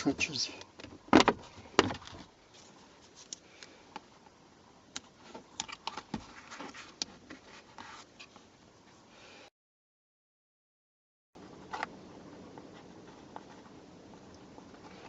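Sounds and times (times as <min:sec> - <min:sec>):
soft rustling: 0:02.2 - 0:04.2, 0:05.2 - 0:09.1.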